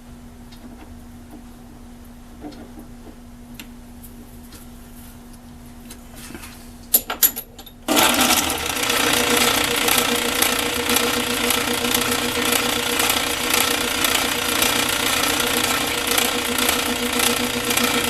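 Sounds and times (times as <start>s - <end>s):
workshop machine humming: 7.8s - 18.0s
machine buzzing loudly: 7.9s - 18.0s.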